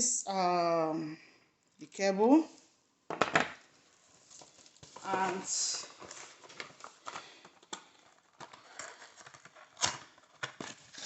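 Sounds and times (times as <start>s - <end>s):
packaging rustling: 3.7s - 11.0s.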